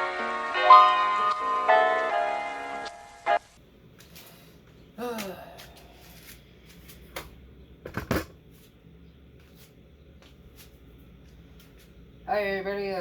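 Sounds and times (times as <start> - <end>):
faint low hum: 3.6 - 13.0
objects clicking and knocking: 7.9 - 8.4.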